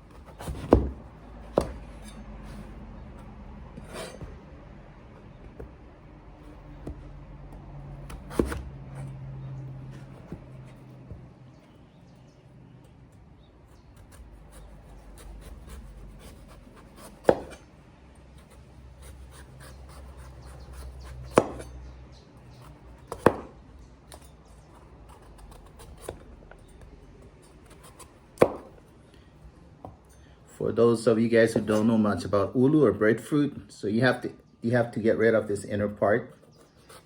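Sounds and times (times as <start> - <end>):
knife chopping breadfruit: 0.0 - 12.0, 13.7 - 28.9.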